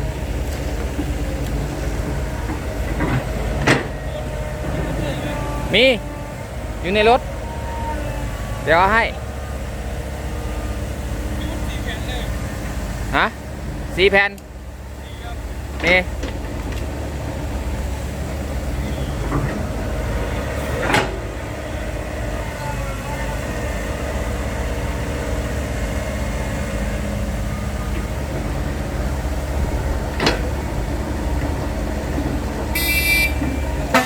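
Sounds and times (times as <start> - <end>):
truck diesel engine running: 0.0 - 34.0
truck horn toot: 4.2 - 9.6, 32.6 - 34.0.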